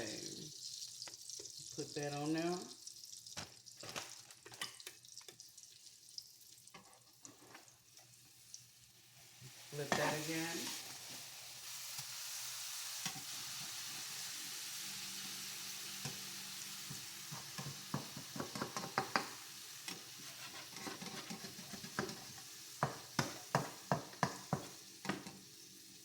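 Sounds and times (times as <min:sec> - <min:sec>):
food sizzling in a pan: 0:00.0 - 0:26.0
utensil tapping and scraping pan: 0:17.3 - 0:25.4.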